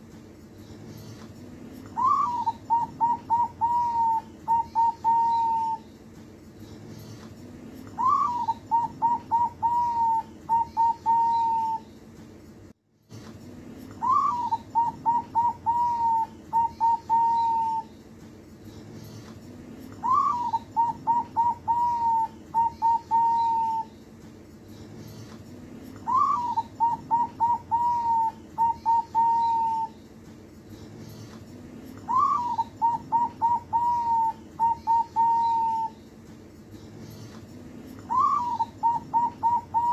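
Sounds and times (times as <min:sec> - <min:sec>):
dove cooing: 0:01.8 - 0:05.8, 0:08.0 - 0:11.9, 0:14.0 - 0:17.9, 0:20.0 - 0:23.9, 0:26.0 - 0:30.0, 0:32.0 - 0:36.0, 0:38.0 - 0:39.9.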